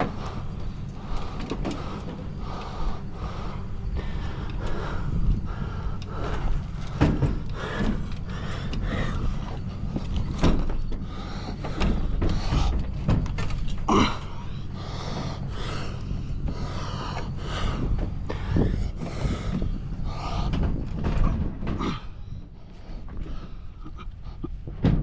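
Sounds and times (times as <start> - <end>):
steady low rumble: 0.0 - 25.0
washing machine knocks and clanks: 24.7 - 25.0.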